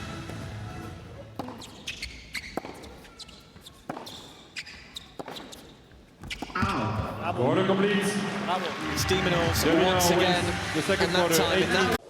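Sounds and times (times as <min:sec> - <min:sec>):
racket striking tennis ball: 0:01.4 - 0:07.2
tennis ball bouncing on court: 0:01.4 - 0:07.3.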